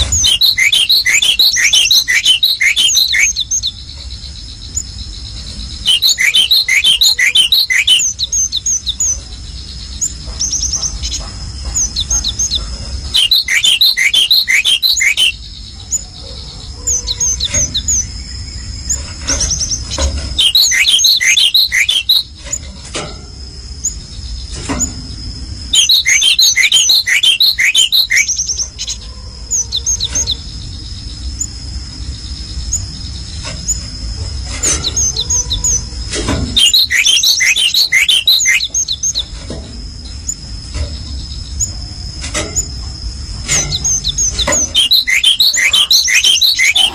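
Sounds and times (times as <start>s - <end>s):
steady high-pitched tone: 0.0s - 3.4s, 5.8s - 8.2s, 13.1s - 15.4s, 20.4s - 22.2s, 25.8s - 28.3s, 36.6s - 38.9s, 44.5s - 46.9s
songbird chirping in rapid bursts: 0.0s - 22.4s, 25.5s - 39.4s, 40.0s - 46.9s.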